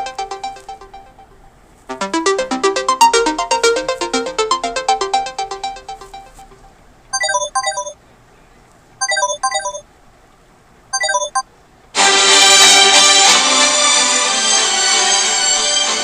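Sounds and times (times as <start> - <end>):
loud ringtone: 0.0 - 1.3, 1.9 - 6.6, 7.2 - 8.0, 9.0 - 9.8, 11.0 - 11.4
electronic ringtone: 0.0 - 6.6, 7.2 - 8.0, 9.0 - 9.8, 11.0 - 11.4.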